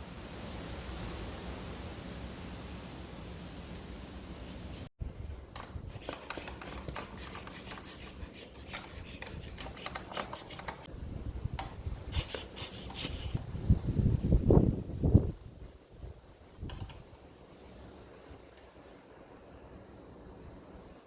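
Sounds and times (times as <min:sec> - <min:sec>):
rubbing strokes on plastic casing: 0:05.9 - 0:10.9, 0:12.1 - 0:13.4.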